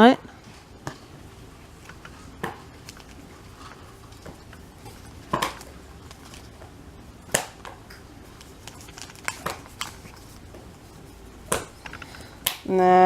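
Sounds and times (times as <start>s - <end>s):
plastic packets crinkling: 2.8s - 6.6s, 8.2s - 12.4s.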